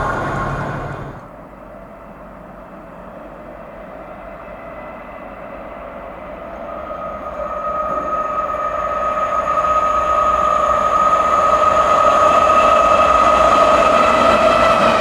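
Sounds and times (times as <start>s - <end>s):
high whine: 0.0s - 1.3s
freight train rumbling: 0.0s - 15.0s.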